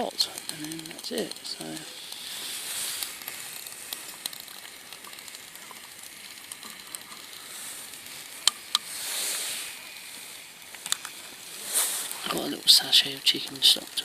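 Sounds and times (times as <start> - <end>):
sharp clicks: 0.0 - 8.9
small ticks: 0.0 - 14.0
soup sizzling and hissing: 0.2 - 14.0.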